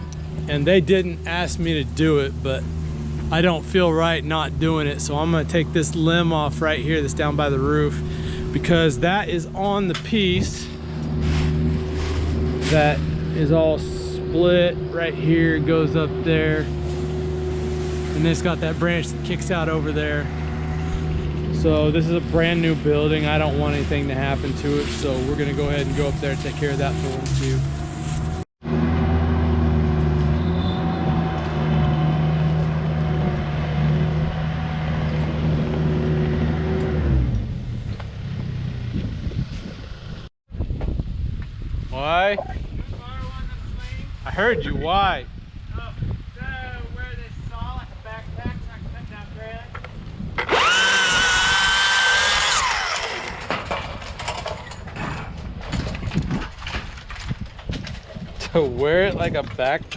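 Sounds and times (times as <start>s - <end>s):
engine running steadily: 0.0s - 40.3s, 49.8s - 55.4s
chainsaw revving: 50.4s - 53.8s
knocks and rattles: 52.4s - 59.9s.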